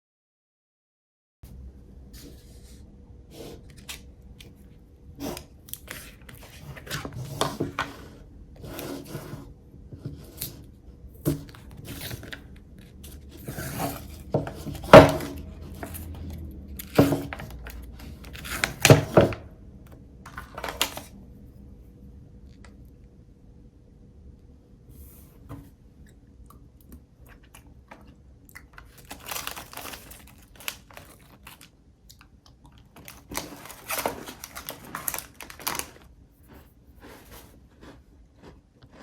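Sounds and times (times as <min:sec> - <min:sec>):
packaging rustling: 0:20.3 - 0:21.2, 0:28.8 - 0:31.7, 0:32.9 - 0:37.4.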